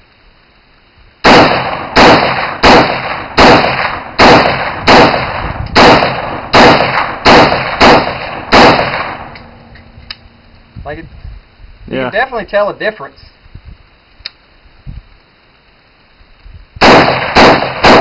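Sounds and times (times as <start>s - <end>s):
loud rifle shots with echo: 1.2s - 9.6s, 16.8s - 18.0s.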